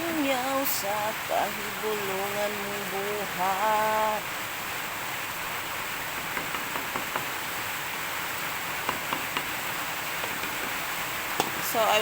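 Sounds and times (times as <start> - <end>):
rain falling: 0.0 - 12.0
faint ticks and drips: 8.4 - 12.0.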